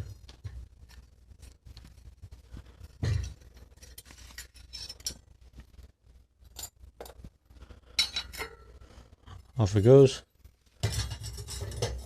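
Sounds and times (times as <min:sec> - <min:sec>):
metallic clicks and scrapes: 0:02.8 - 0:05.3, 0:10.4 - 0:12.0.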